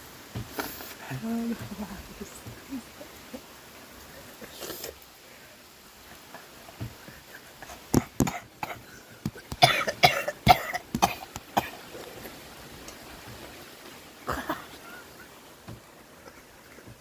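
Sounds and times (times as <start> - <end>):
person coughing: 8.0 - 11.8, 14.3 - 14.8.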